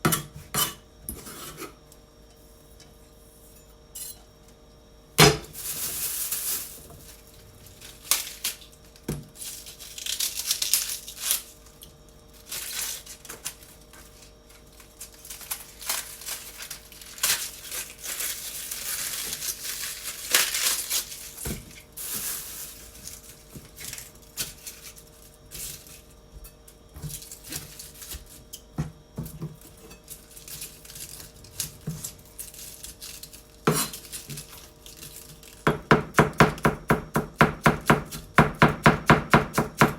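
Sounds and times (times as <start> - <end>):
cabbage rustling and tearing: 5.6 - 26.2, 27.1 - 28.5, 29.7 - 35.6.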